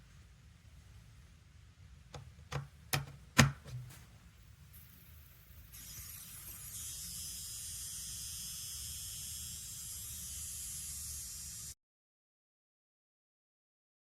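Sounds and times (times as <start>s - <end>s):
steady high hiss: 3.8s - 11.8s.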